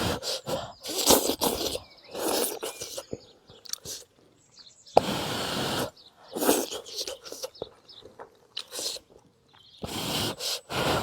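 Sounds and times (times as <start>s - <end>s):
person chewing crunchy food: 0.0s - 4.1s, 6.4s - 11.0s.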